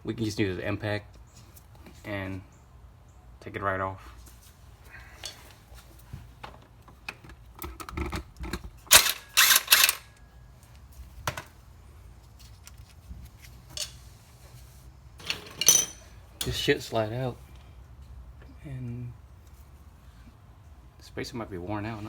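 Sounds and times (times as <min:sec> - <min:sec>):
impact wrench bursts: 0:08.9 - 0:10.1.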